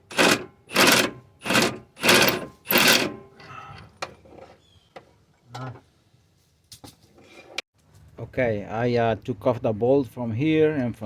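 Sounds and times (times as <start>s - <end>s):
tool handling: 0.0s - 4.6s
ratchet wrench clicking: 0.1s - 3.1s.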